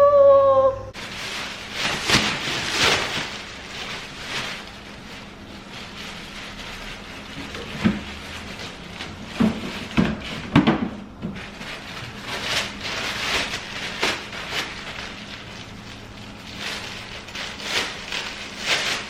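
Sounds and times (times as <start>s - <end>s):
rustling: 1.0s - 10.6s, 11.3s - 19.0s
objects knocking and clunking: 7.4s - 8.2s, 9.0s - 11.7s.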